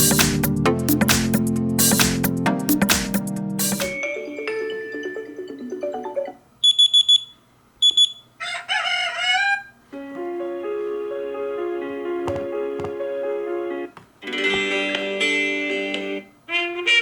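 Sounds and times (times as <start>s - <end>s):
rapid high electronic beeps: 6.6s - 8.2s
recorded rooster crowing: 8.4s - 9.9s.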